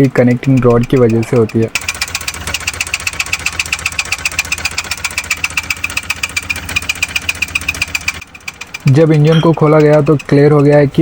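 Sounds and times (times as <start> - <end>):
car engine knocking: 0.0 - 11.0.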